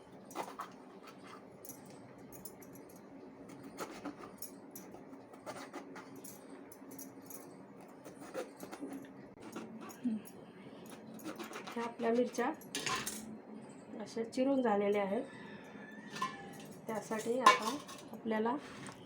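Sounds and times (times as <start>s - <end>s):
knife cutting peppers: 0.3s - 1.5s, 3.5s - 6.2s, 7.8s - 10.2s, 10.9s - 12.6s.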